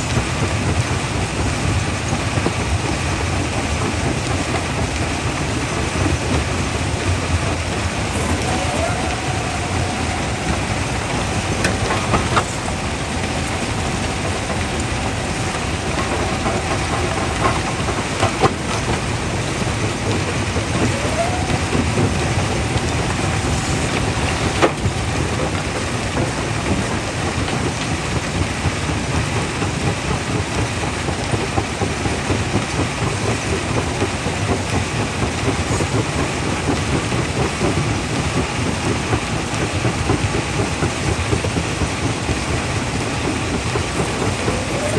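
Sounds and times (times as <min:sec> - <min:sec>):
jaw crusher grinding rumble: 0:00.0 - 0:44.9
steady whine: 0:05.4 - 0:28.6, 0:42.3 - 0:44.9.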